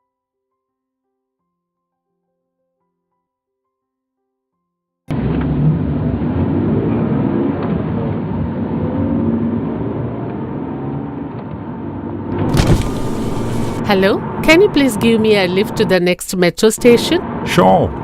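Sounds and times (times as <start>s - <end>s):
road traffic noise: 5.1s - 18.0s
car engine running: 12.3s - 16.0s.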